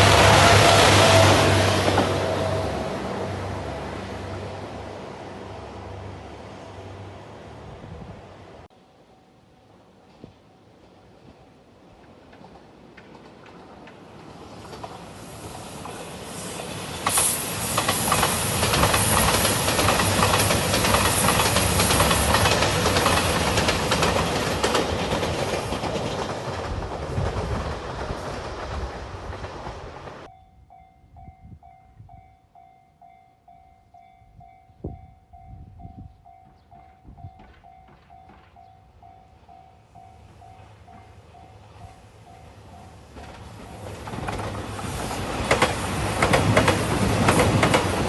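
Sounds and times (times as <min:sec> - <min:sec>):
train engine noise: 0:00.0 - 0:30.3, 0:34.0 - 0:48.0
train wheels clacking on rail joints: 0:12.0 - 0:30.3, 0:36.4 - 0:38.8, 0:42.8 - 0:48.0.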